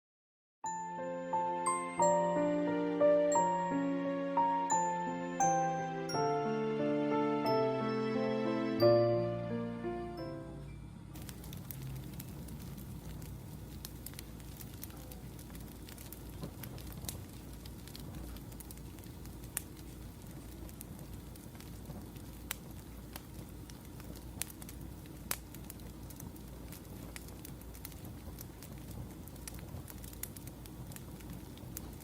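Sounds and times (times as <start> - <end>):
low background hum: 8.8 - 32.0
wood fire crackling: 11.2 - 32.0.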